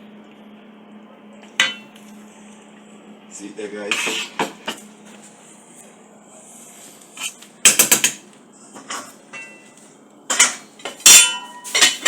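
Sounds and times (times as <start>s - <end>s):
cutlery clattering on plates: 10.3s - 12.0s.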